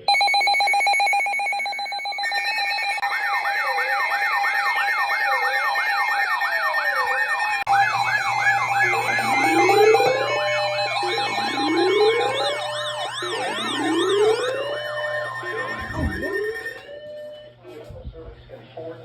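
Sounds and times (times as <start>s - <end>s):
electronic emergency sirens: 0.0s - 17.6s
steady alarm tone: 0.0s - 17.6s
low hum: 7.7s - 17.4s.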